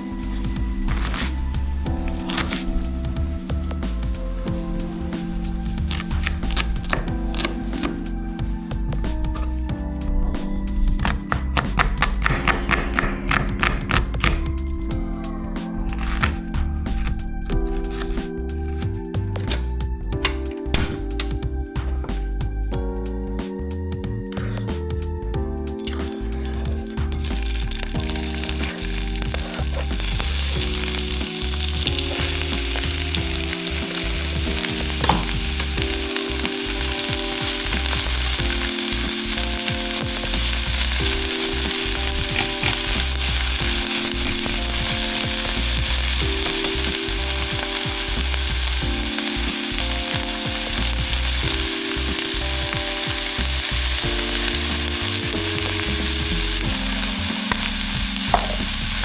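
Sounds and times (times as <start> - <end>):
soft background music: 0.0 - 59.0
food sizzling in a pan: 27.3 - 59.0.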